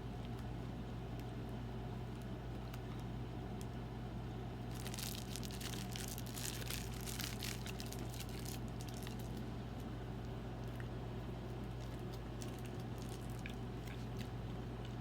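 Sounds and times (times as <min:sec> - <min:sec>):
steady low hum: 0:00.0 - 0:15.0
fine crackling and crinkling: 0:04.6 - 0:15.0
person eating a brownie: 0:10.6 - 0:15.0.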